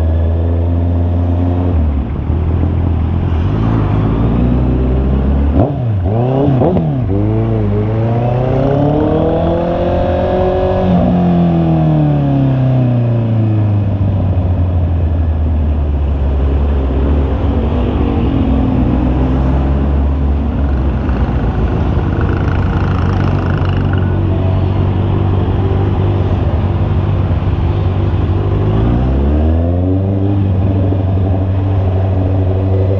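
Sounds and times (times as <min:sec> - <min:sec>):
motorcycle engine revving: 0:00.7 - 0:13.9, 0:16.4 - 0:32.9.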